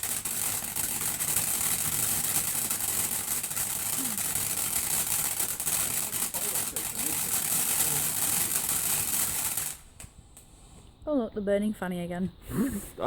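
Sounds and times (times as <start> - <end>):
sharp crackles: 0.0 - 10.5
firework hissing: 0.0 - 10.8.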